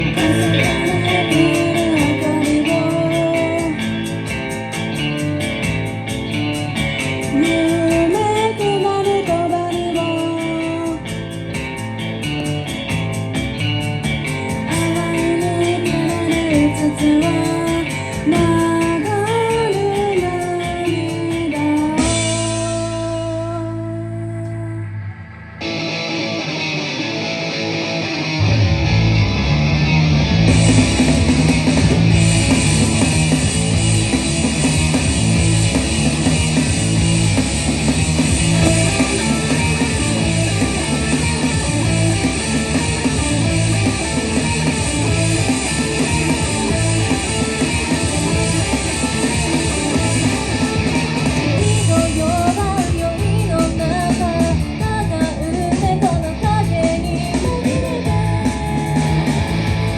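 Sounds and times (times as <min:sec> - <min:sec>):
rock band playing live: 0:00.0 - 0:24.1, 0:25.4 - 0:59.9
electric guitar: 0:00.0 - 0:59.9
cymbals: 0:32.2 - 0:52.5.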